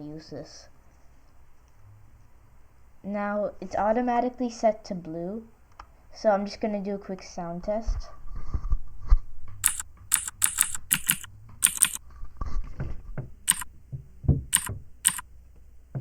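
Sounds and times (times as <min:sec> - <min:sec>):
clicky keyboard typing: 0:09.6 - 0:12.0, 0:13.5 - 0:13.7, 0:14.6 - 0:15.2.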